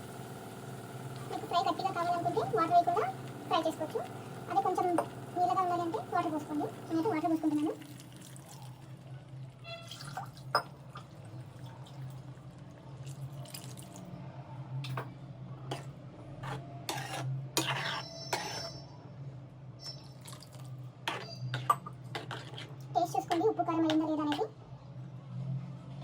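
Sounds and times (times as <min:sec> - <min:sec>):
steady low hum: 0:00.0 - 0:07.9
water pouring into a pan: 0:00.0 - 0:14.0.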